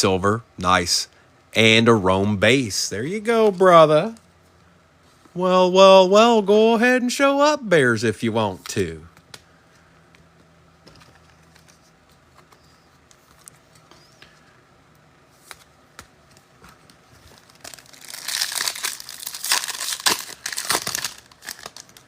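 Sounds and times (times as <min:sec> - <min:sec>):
wrapper crinkling and tearing: 0:17.1 - 0:22.0.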